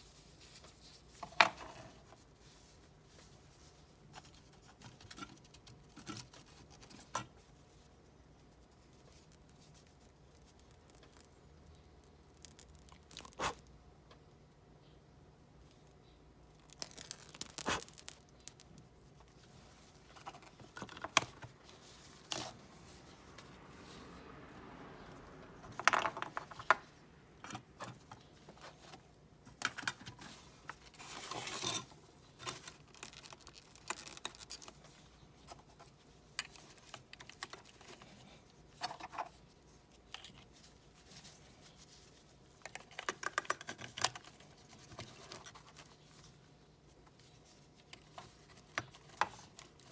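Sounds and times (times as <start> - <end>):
tearing sounds: 16.8 - 18.7
handling scraping noises: 19.1 - 24.2, 25.1 - 49.9.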